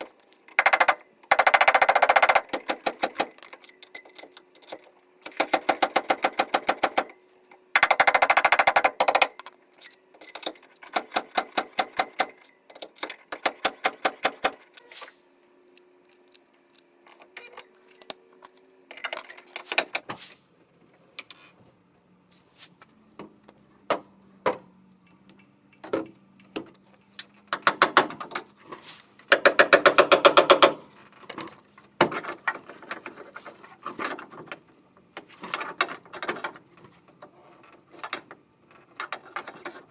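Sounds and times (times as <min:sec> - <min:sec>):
wrench clicking on bolts: 0:00.5 - 0:07.1, 0:07.8 - 0:09.4, 0:10.2 - 0:14.9.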